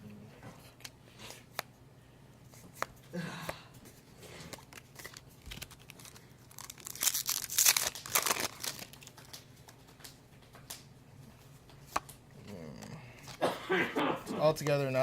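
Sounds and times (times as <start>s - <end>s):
foil wrapper crinkling: 4.6s - 10.1s.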